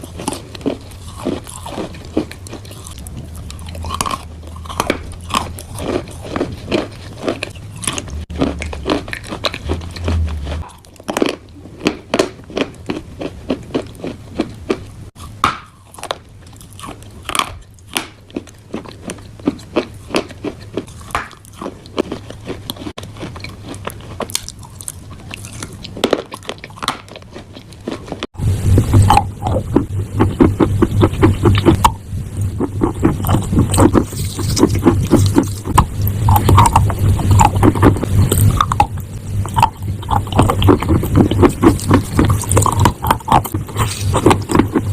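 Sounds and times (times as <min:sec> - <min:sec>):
low steady hum: 0:00.0 - 0:44.9
chalk and clay crunching: 0:32.6 - 0:38.6.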